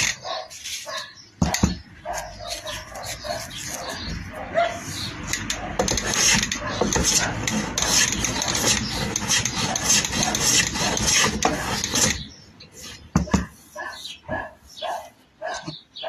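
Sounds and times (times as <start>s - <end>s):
hand plane shaving wood: 4.8s - 13.7s.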